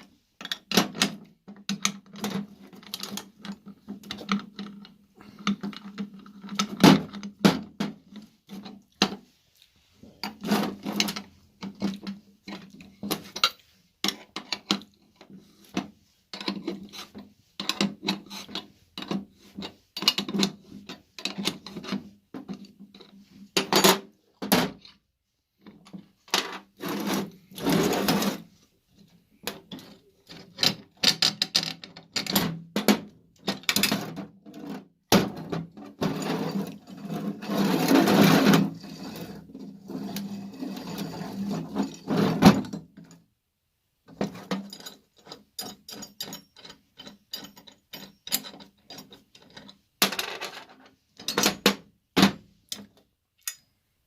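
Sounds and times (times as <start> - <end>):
metal scraping and rubbing: 26.6 - 28.7, 36.0 - 42.6.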